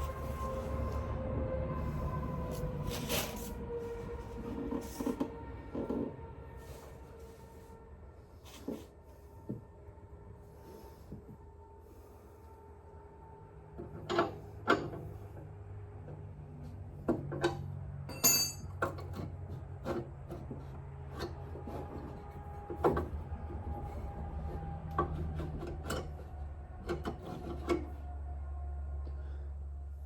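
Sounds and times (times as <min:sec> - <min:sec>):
low steady hum: 0:00.0 - 0:30.0
hand tools clanking on metal: 0:17.4 - 0:19.2
bright metallic clink: 0:18.1 - 0:18.7.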